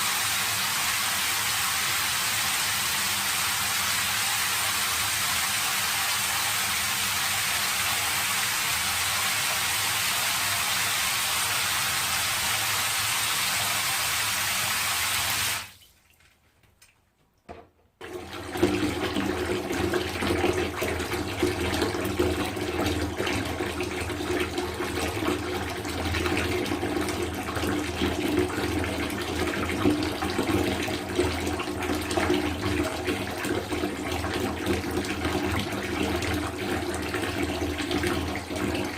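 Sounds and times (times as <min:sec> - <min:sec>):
water stream hissing into bathtub: 0:00.0 - 0:15.8.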